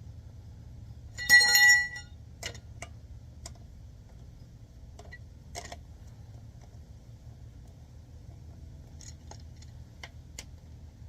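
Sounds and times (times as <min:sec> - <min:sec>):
lug wrench clanking on bolts: 0:01.2 - 0:02.0.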